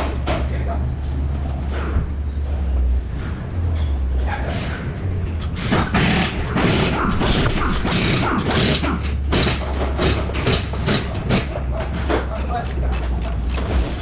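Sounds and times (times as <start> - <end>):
steady low hum: 0.0 - 14.0
mechanical clicks and metallic knocks: 8.4 - 14.0.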